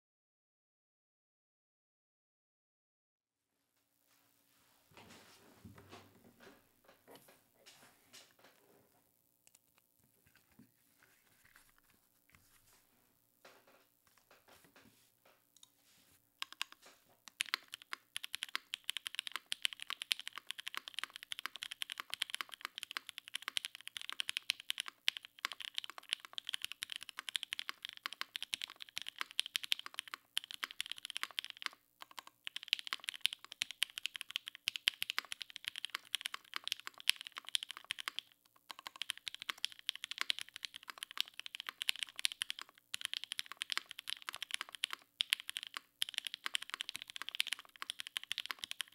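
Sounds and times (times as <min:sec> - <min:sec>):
fast typing on mechanical keyboard: 0:16.4 - 0:48.9.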